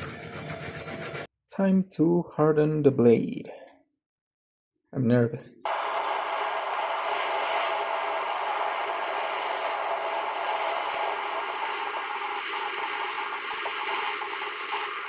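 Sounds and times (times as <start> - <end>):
flame rushing hiss: 5.7 - 15.0.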